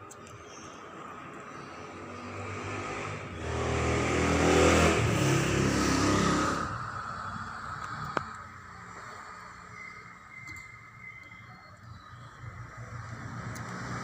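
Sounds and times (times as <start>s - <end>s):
vehicle engine passing by: 1.9s - 9.8s, 12.5s - 14.0s.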